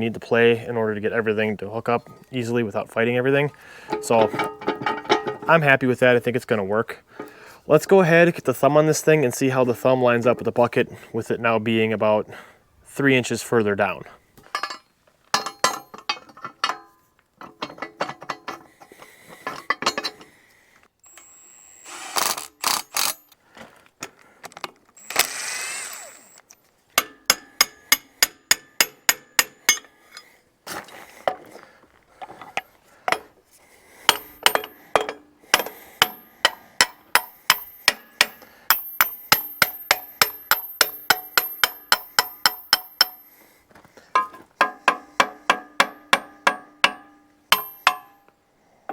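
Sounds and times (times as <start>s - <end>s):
metallic clanks and knocks: 3.8s - 5.7s, 14.4s - 20.3s, 27.0s - 30.3s, 32.2s - 33.4s, 34.0s - 43.3s, 44.2s - 48.3s.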